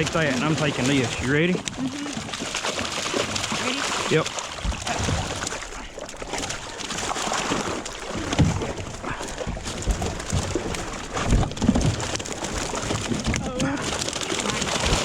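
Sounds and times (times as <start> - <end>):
water and net washing: 0.0 - 15.0
people grunting with effort: 13.4 - 14.9.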